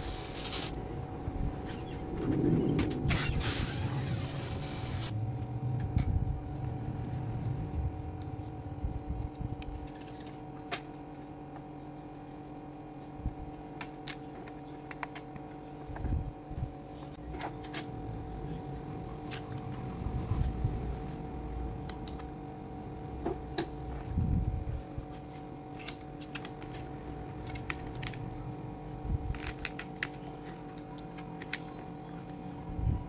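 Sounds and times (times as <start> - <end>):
steady hum: 0.0 - 33.0.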